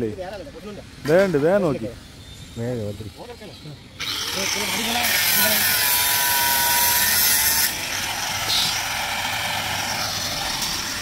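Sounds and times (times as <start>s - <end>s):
angle grinder cutting steel: 4.0s - 11.0s.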